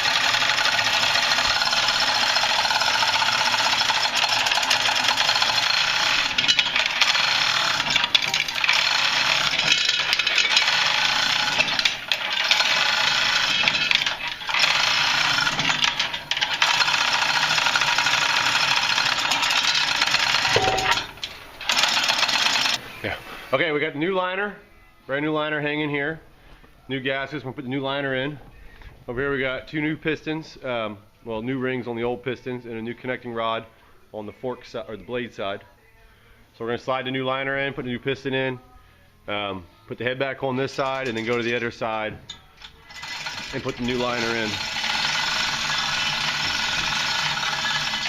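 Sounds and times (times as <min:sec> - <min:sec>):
metallic rattling of tools: 0:00.2 - 0:22.8, 0:40.5 - 0:48.0.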